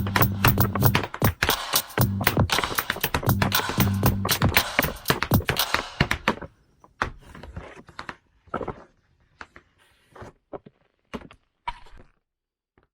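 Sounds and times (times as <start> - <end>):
tap shoes on wooden floor: 0.0 - 6.5.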